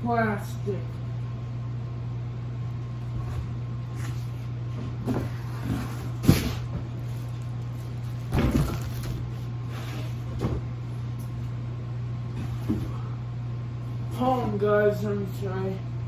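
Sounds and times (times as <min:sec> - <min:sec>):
steady low hum: 0:00.0 - 0:16.0
packaging knocks and rustles: 0:08.0 - 0:09.3.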